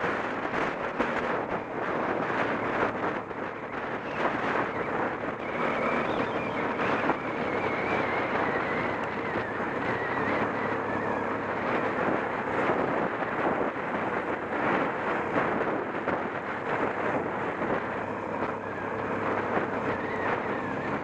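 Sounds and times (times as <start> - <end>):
faint wavering whine: 0.0 - 21.0
motorcycle engine running: 0.0 - 21.0
wind buffeting microphone: 0.0 - 21.0.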